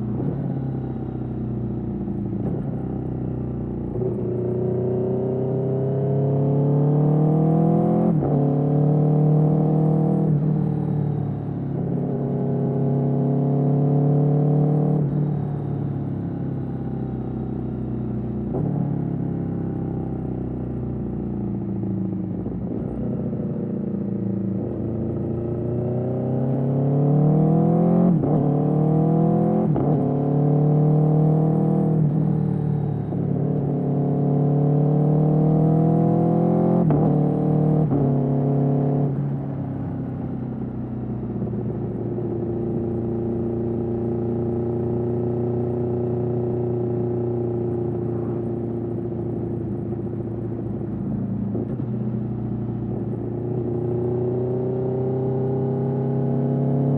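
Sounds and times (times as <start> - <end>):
motorcycle engine accelerating: 0.0 - 56.9.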